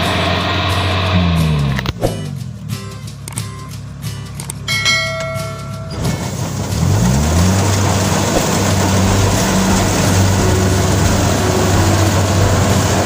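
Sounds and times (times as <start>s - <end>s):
harvester engine revving: 0.0s - 13.0s
loud machinery clatter: 0.0s - 13.0s.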